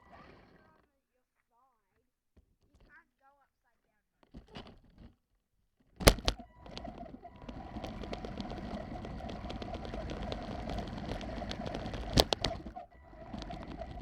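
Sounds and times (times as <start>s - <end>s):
small crackling clicks: 6.0s - 14.0s
toy truck electric motor running: 6.0s - 14.0s.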